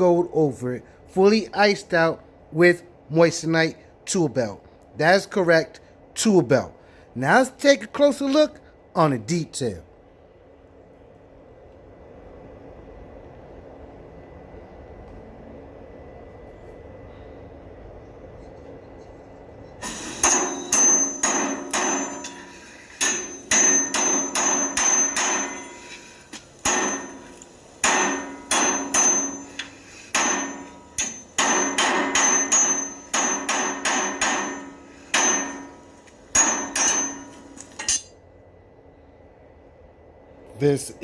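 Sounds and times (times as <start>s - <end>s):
hammer striking metal: 19.8s - 38.2s.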